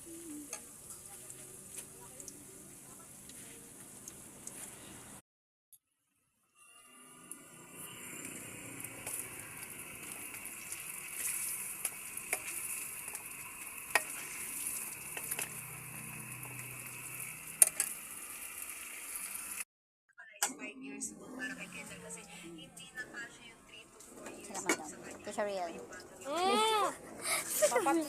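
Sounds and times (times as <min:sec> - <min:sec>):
fritters sizzling in hot oil: 0:00.0 - 0:05.2, 0:06.1 - 0:19.6
oil popping: 0:03.8 - 0:04.7, 0:08.1 - 0:18.0.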